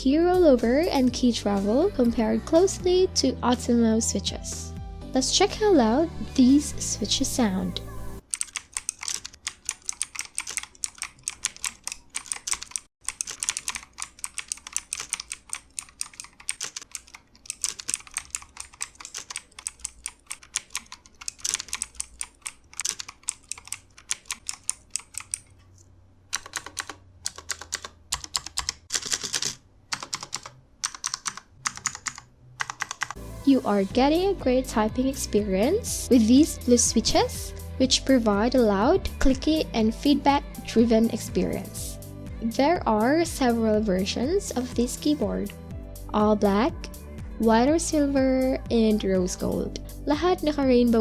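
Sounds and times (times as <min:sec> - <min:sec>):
clicky keyboard typing: 0:08.2 - 0:25.6, 0:26.3 - 0:33.2.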